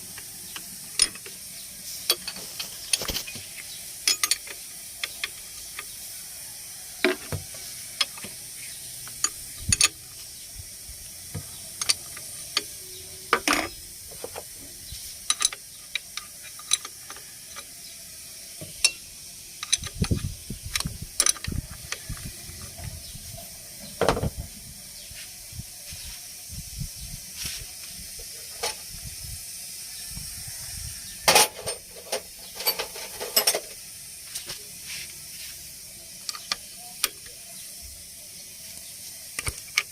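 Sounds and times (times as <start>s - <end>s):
steady high hiss: 0.0s - 39.9s
hand tools clicking and clanking: 0.1s - 6.0s, 9.0s - 10.2s, 11.3s - 14.6s, 15.2s - 17.8s, 18.6s - 22.9s, 31.2s - 34.6s.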